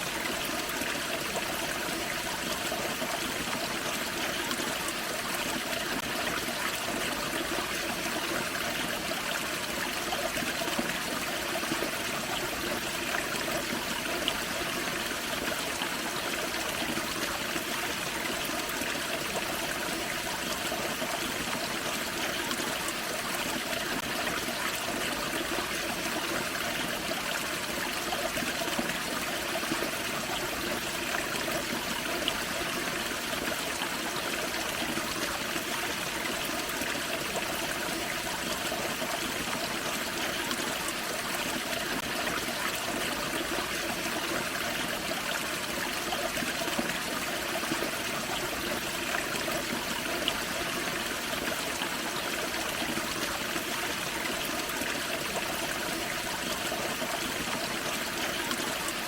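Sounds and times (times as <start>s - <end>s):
small waterfall rushing: 0.0s - 59.0s.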